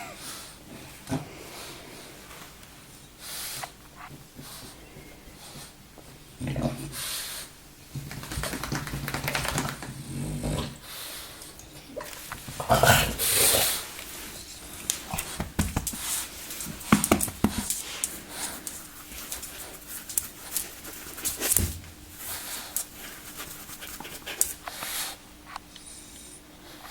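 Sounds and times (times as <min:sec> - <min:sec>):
dog breathing noisily and snorting: 0:06.8 - 0:25.2.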